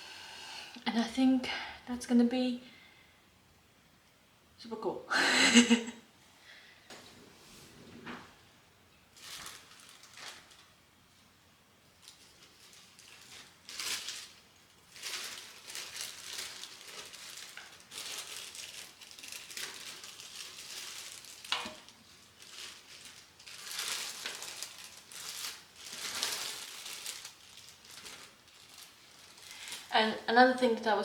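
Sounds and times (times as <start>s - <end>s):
plastic bags rustling: 9.1s - 31.0s.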